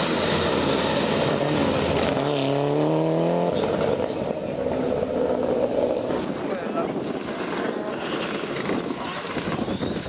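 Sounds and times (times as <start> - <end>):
car engine revving hard: 0.0 - 4.0.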